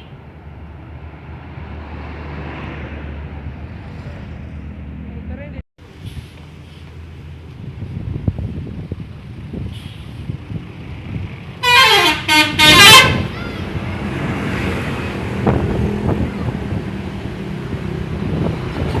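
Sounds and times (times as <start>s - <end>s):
bus engine and road noise: 0.0s - 19.0s
melodic bus horn blasts: 11.6s - 13.3s.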